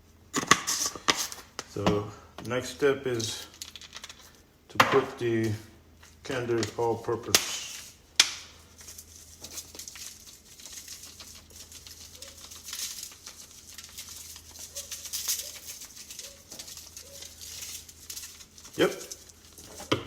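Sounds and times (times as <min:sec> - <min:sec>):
seasoning sprinkling on meat: 0:08.6 - 0:19.9.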